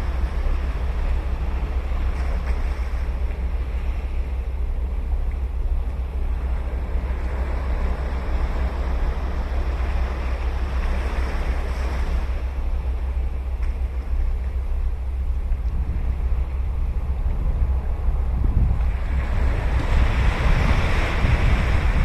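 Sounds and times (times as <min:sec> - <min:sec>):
ocean surf breaking: 0:00.0 - 0:22.0
wind rumble on microphone: 0:00.0 - 0:22.0.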